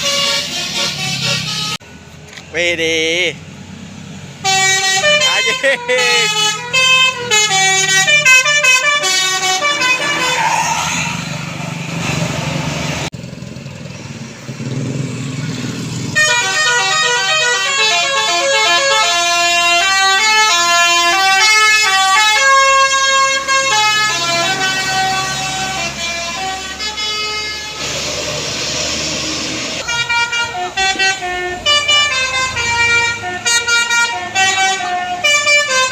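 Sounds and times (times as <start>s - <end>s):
multi-tone bus horn tune: 0.0s - 1.8s, 4.4s - 11.0s, 16.1s - 35.9s
bus engine and road noise: 0.0s - 35.9s.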